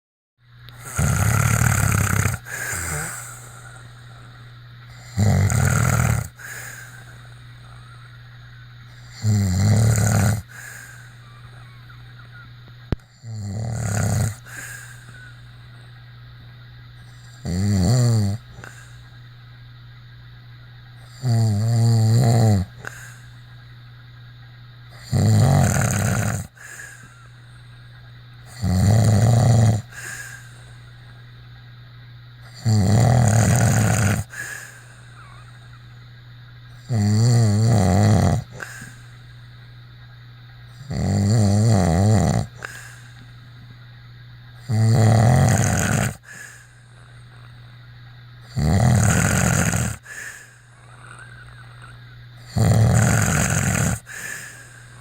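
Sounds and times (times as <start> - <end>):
steady low hum: 0.4 - 55.0
person snoring: 0.7 - 8.0, 8.9 - 11.9, 13.1 - 15.4, 17.1 - 19.0, 21.0 - 23.3, 25.0 - 27.3, 28.5 - 30.8, 32.5 - 35.6, 36.8 - 39.2, 40.8 - 43.2, 44.6 - 47.1, 48.4 - 55.0.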